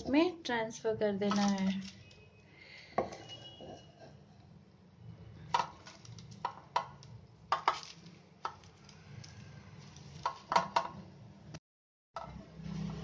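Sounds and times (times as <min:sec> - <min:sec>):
spoon knocking and scraping pan: 0:10.1 - 0:11.0.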